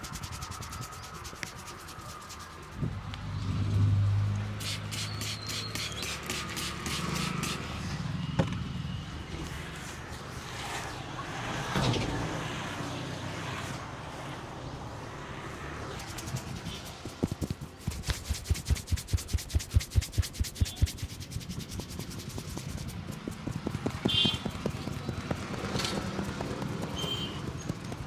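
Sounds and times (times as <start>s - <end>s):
hands rubbing hair and scalp: 0.0s - 2.8s, 4.6s - 7.6s, 16.0s - 28.0s
rhythmic hand slaps on head: 16.0s - 28.0s.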